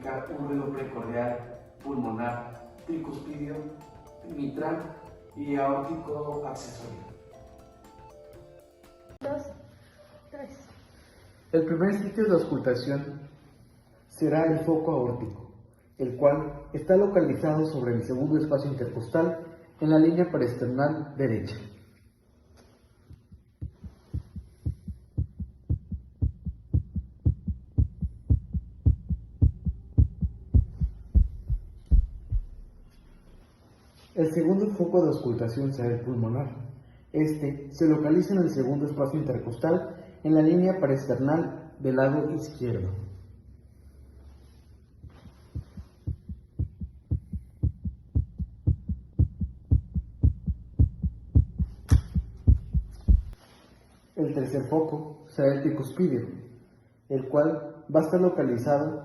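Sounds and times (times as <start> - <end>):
heartbeat lub-dub: 0.0 - 9.1, 23.0 - 33.4, 45.0 - 53.4.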